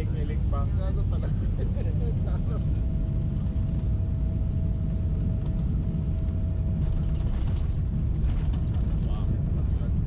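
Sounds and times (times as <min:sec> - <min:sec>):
airplane cabin engine rumble: 0:00.0 - 0:10.0.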